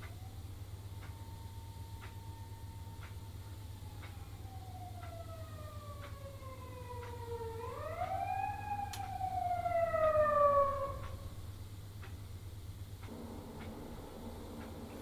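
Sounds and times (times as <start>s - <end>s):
clock ticking: 0.0s - 8.2s, 11.9s - 15.0s
wailing siren: 0.0s - 11.4s, 13.1s - 15.0s.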